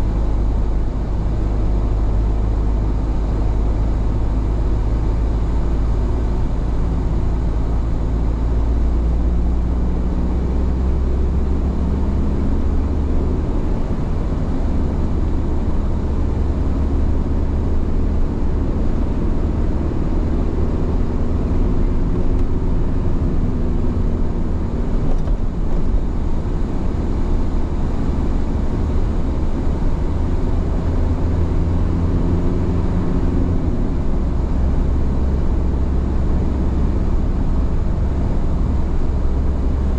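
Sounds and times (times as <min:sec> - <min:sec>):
car driving on road: 0:00.0 - 0:39.9.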